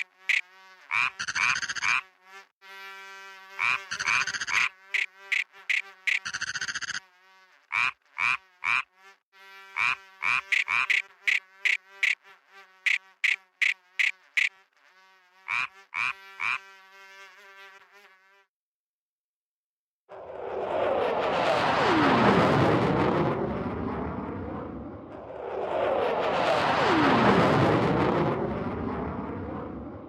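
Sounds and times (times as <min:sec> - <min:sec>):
frogs croaking: 0:00.0 - 0:02.0, 0:03.6 - 0:07.0, 0:09.8 - 0:12.2, 0:12.9 - 0:14.5.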